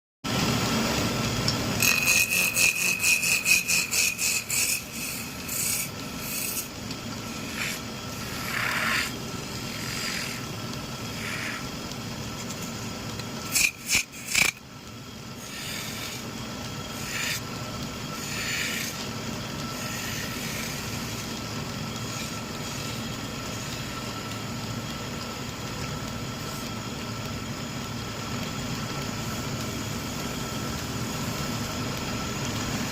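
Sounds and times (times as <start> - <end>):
steady low hum: 0.3 - 32.9
hand tool scraping wood: 1.8 - 10.5, 11.1 - 11.7, 16.9 - 17.4.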